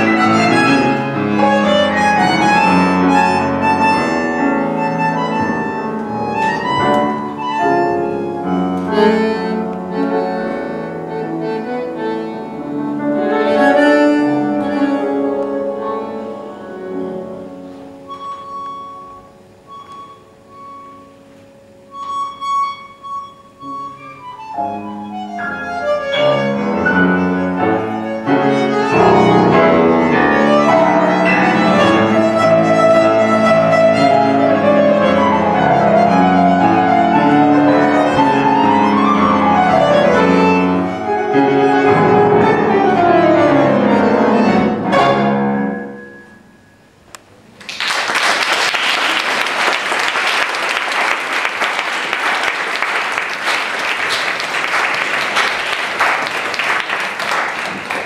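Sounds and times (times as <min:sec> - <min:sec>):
bandoneon and piano tango: 0:00.0 - 0:47.6
audience applause: 0:47.6 - 0:58.0.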